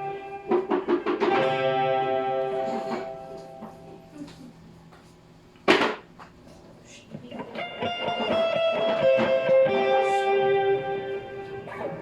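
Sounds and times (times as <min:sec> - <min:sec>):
sharp guitar strike: 0:00.0 - 0:03.8, 0:07.6 - 0:12.0
electric guitar notes: 0:00.0 - 0:04.3, 0:07.4 - 0:12.0.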